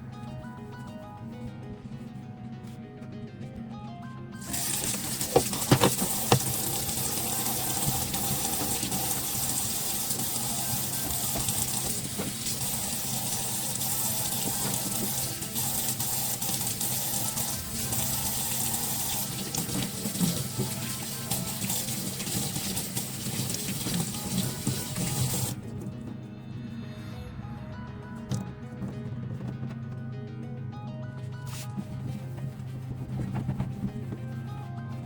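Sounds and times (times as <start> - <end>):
tap running into sink: 4.4 - 25.6.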